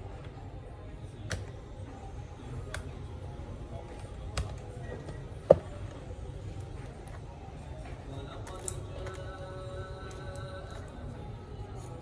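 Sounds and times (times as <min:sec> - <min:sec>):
laptop parts clicking: 0:04.0 - 0:04.6.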